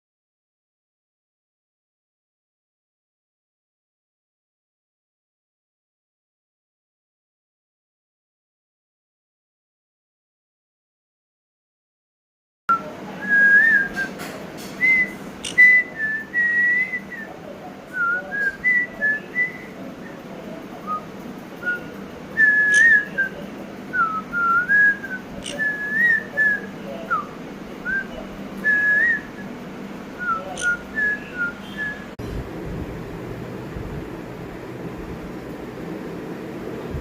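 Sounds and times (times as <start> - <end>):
parrot whistling: 14.8 - 17.2, 21.6 - 23.4, 24.0 - 27.3, 27.9 - 29.4, 30.2 - 32.1.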